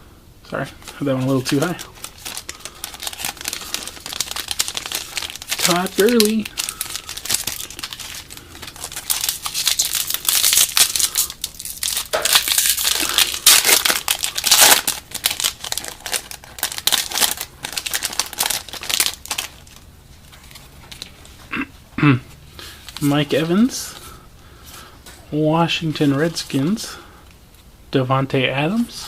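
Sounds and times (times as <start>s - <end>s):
card pack wrapper tearing: 0.8s - 19.8s.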